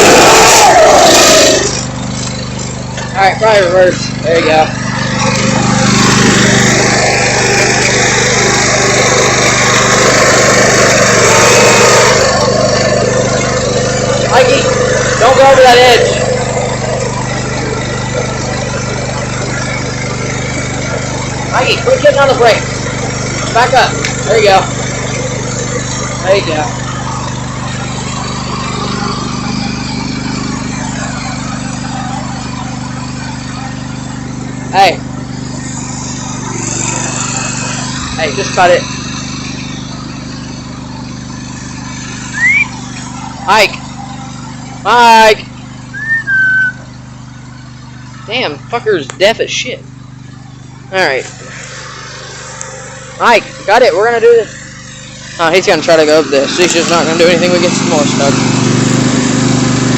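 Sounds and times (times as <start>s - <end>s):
loud rushing noise: 0.0s - 1.9s
lawn mower engine running: 0.0s - 59.9s.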